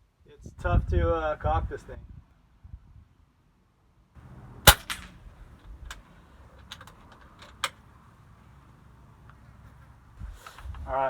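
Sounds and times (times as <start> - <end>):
air rifle shot: 4.7 - 5.2.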